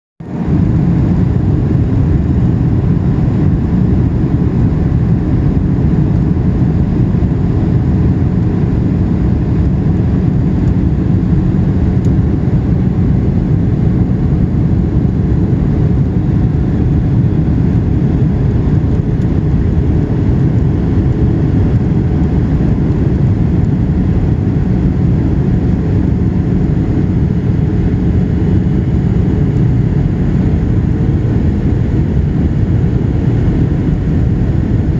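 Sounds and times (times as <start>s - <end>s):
aircraft cabin engine rumble: 0.2s - 34.9s.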